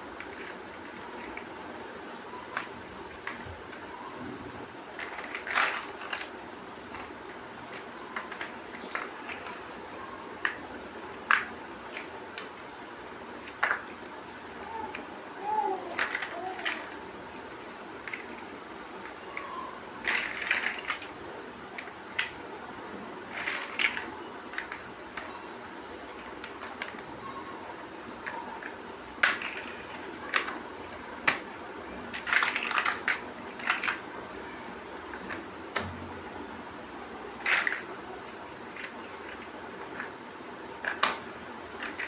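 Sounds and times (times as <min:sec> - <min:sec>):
plastic bricks clicking and rattling: 0:05.0 - 0:09.7, 0:13.4 - 0:14.0, 0:15.9 - 0:21.2, 0:23.3 - 0:25.4, 0:28.2 - 0:34.1, 0:37.4 - 0:40.2, 0:40.8 - 0:42.0.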